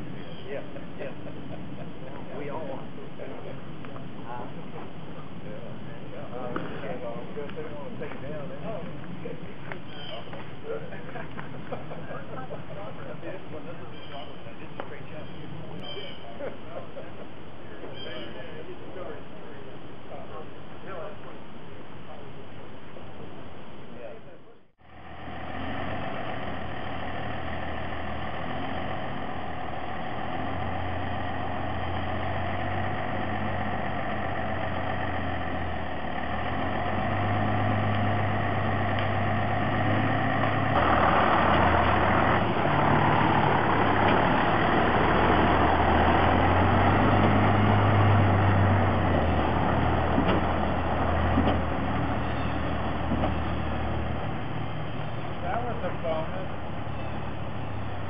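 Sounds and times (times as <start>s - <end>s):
heavy truck engine running: 24.7s - 58.0s.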